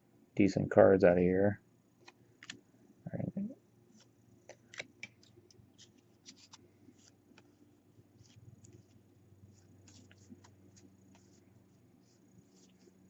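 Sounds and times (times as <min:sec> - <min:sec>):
trading cards flipping: 0:02.0 - 0:02.6, 0:03.9 - 0:11.4.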